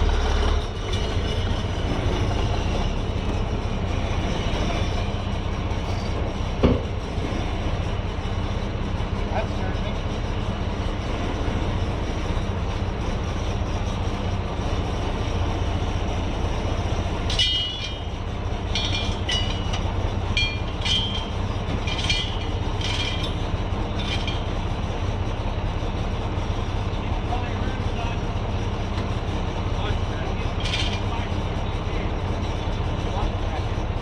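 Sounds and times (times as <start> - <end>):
diesel engine running: 0.0 - 34.0
high metallic squeaks and clinks: 0.8 - 7.9, 17.3 - 24.9, 30.4 - 31.4.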